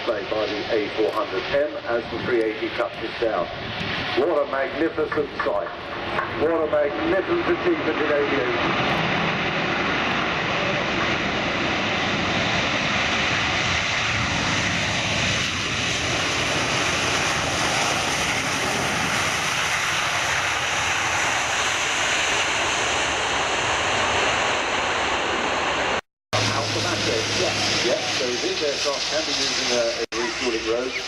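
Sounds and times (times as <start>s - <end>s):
loud aircraft engines running: 0.0s - 31.0s.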